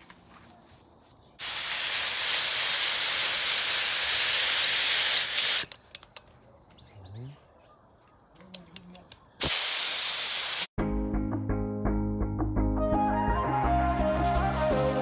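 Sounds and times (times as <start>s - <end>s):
spray gun hissing: 1.4s - 5.7s, 9.4s - 10.7s.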